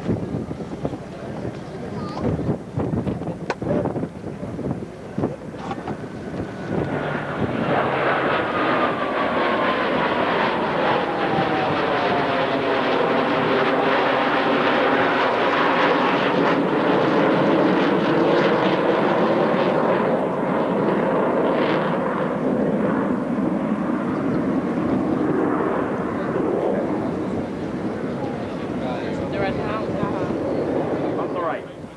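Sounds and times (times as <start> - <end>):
jet roar flying past: 4.3 - 31.9
jet whine falling in pitch: 5.6 - 17.2.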